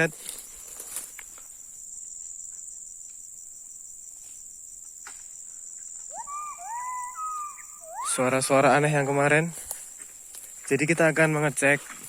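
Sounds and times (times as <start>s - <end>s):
high-pitched insect drone: 5.4s - 10.0s
gibbon whooping calls: 6.1s - 9.3s.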